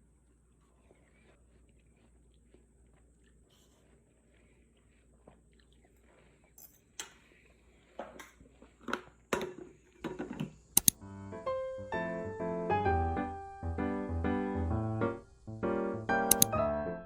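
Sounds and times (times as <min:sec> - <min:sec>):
sharp clicks and knocks: 0:09.4 - 0:11.0, 0:16.3 - 0:16.5
keyboard music: 0:11.0 - 0:17.0.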